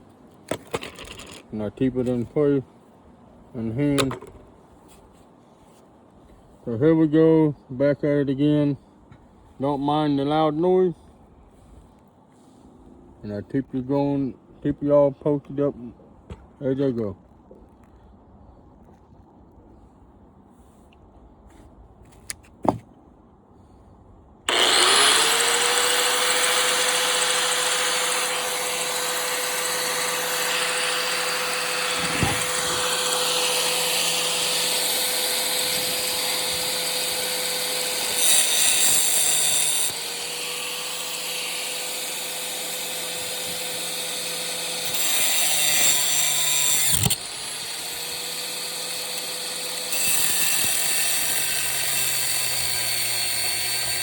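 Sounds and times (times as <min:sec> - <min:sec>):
angle grinder cutting metal: 0:24.5 - 0:54.0.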